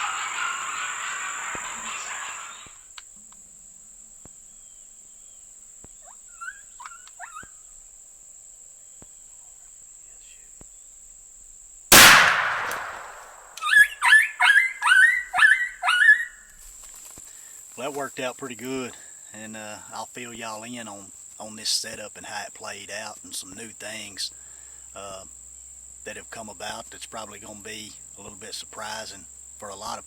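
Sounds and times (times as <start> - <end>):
rifle shot: 11.9 - 13.8
short high calls: 11.9 - 16.6.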